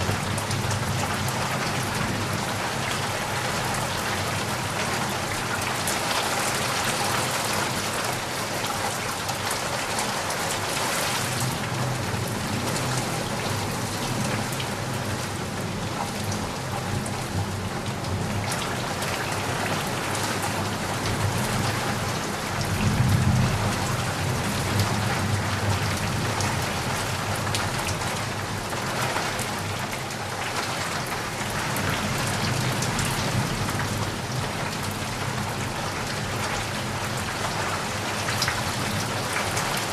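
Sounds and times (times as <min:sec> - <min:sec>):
heavy rain falling: 0:00.0 - 0:39.9
low rumble of thunder: 0:21.0 - 0:28.5.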